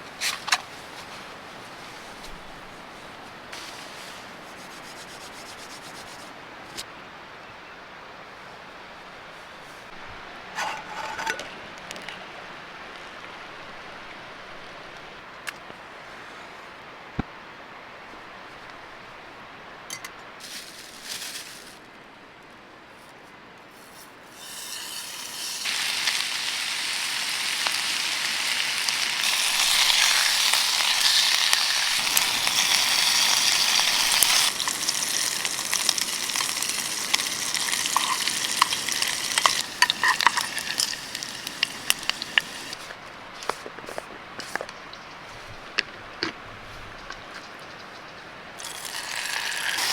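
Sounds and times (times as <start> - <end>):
food sizzling in a pan: 24.4 - 42.9, 48.6 - 49.9
sharp pops and crackles: 29.0 - 46.4.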